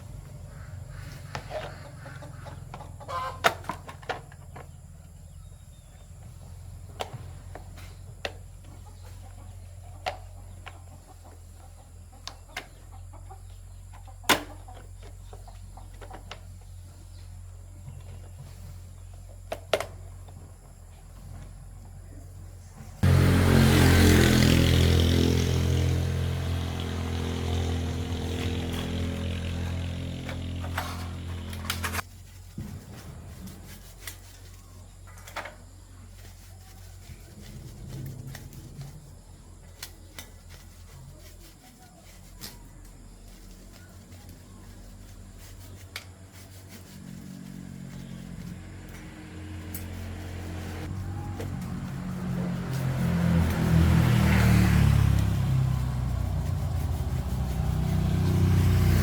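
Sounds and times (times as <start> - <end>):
electric motor running: 23.0 - 32.0.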